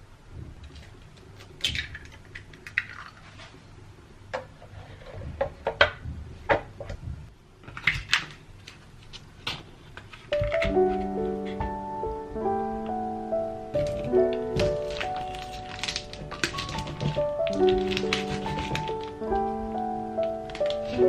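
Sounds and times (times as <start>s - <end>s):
music: 10.3s - 21.0s.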